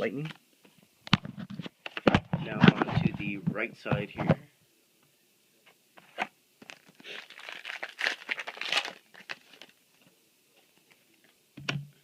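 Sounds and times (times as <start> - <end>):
foil wrapper crinkling and tearing: 6.6 - 9.8.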